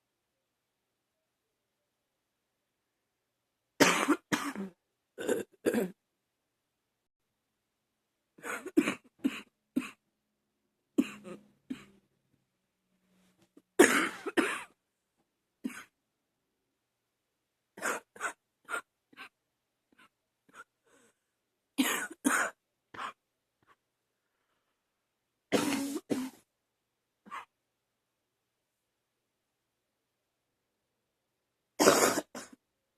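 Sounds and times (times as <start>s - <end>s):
woman coughing: 3.8s - 6.0s, 8.4s - 10.0s, 13.8s - 14.8s, 21.8s - 23.2s, 25.5s - 26.4s.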